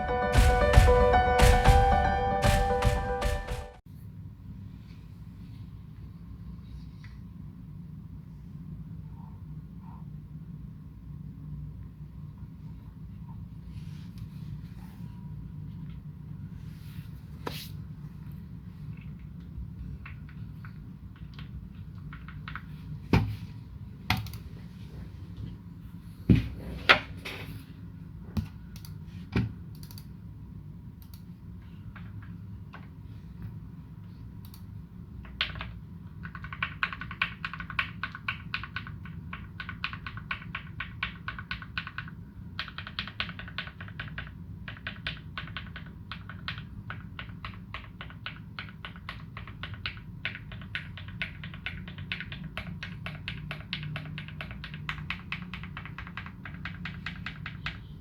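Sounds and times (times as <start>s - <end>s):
mechanical keyboard typing: 35.2s - 58.0s.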